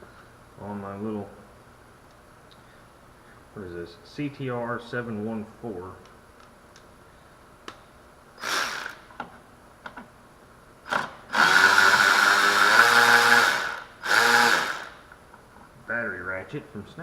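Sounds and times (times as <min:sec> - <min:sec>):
cordless ratchet motor whine: 0:08.4 - 0:09.1, 0:10.9 - 0:15.0.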